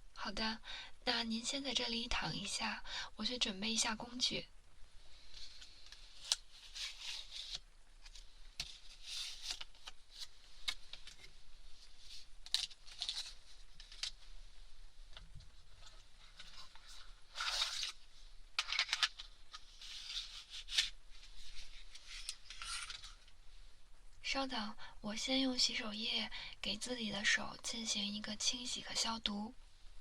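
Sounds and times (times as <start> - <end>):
packaging rustling and crinkling: 5.2 - 14.4, 15.1 - 23.4.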